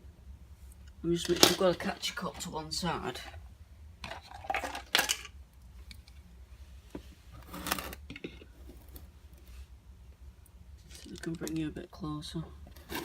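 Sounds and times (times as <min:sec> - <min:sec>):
containers rustling and knocking: 0:04.0 - 0:05.4, 0:07.0 - 0:09.1, 0:12.7 - 0:13.0.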